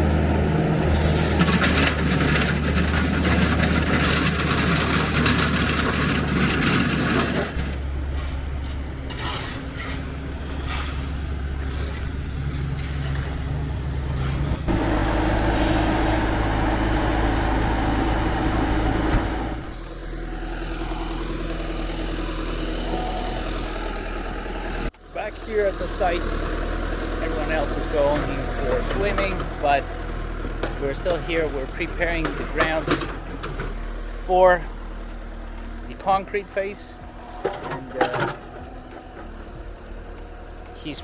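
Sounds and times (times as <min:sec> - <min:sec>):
engines running: 0:00.0 - 0:41.0.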